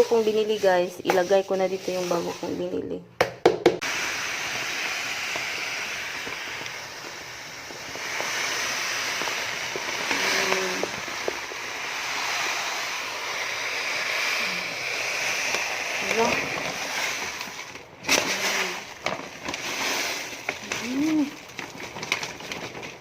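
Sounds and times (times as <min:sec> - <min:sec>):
cat litter pouring: 0:03.8 - 0:23.0.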